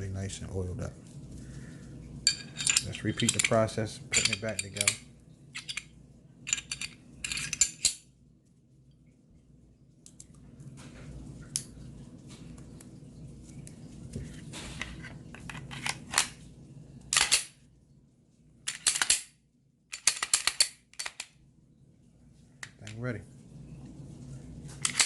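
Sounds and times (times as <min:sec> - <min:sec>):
pistol parts clicking: 0:17.1 - 0:17.5, 0:18.7 - 0:19.3, 0:19.9 - 0:21.3.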